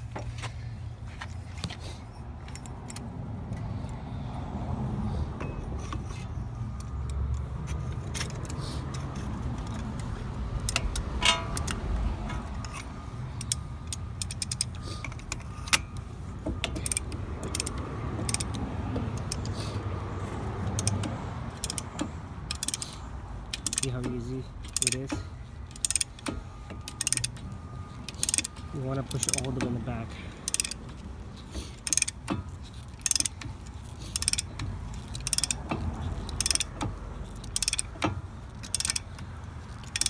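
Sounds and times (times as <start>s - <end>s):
metal tool clicks and clinks: 5.4s - 16.0s, 20.6s - 27.4s, 28.1s - 30.9s, 31.8s - 40.0s.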